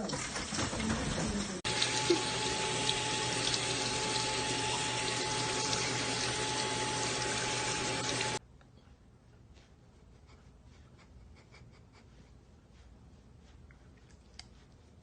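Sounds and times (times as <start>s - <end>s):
running water: 0.0s - 8.4s.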